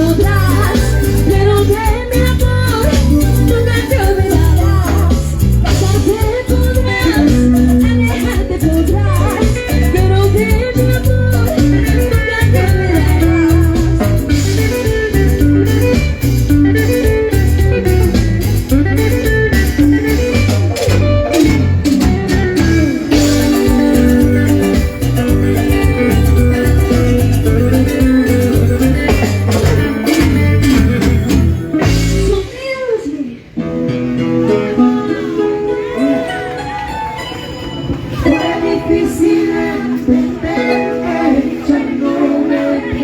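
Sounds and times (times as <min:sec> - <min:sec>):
steady bass beat: 0:00.0 - 0:32.4
guitar melody: 0:00.0 - 0:43.0
latin dance music: 0:00.0 - 0:43.0.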